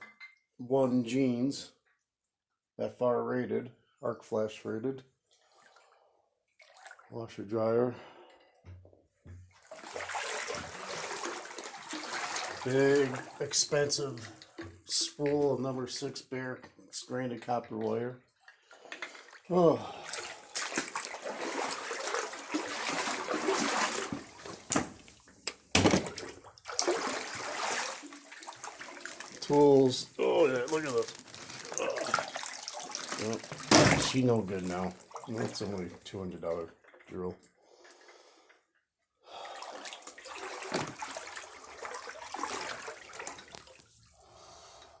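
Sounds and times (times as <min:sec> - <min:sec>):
floodwater sloshing and splashing: 0:05.2 - 0:07.2, 0:09.5 - 0:15.6, 0:17.4 - 0:38.4, 0:39.3 - 0:45.0.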